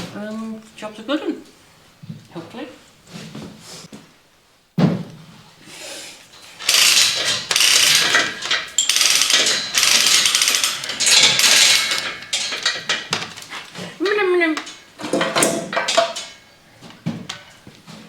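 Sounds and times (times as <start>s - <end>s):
loud mechanical rattling: 6.6s - 13.7s.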